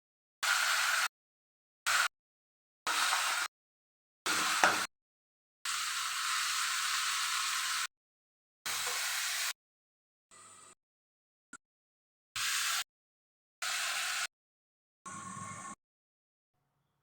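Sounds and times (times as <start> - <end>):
sizzling in a hot pan: 4.3 - 4.9, 6.0 - 7.8.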